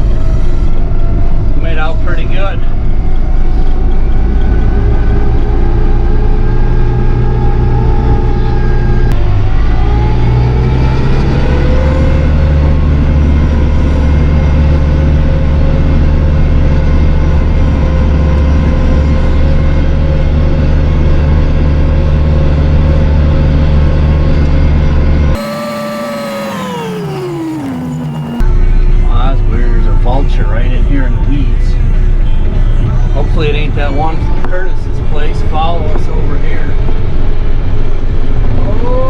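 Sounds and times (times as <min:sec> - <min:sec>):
engine running: 0:02.8 - 0:28.8.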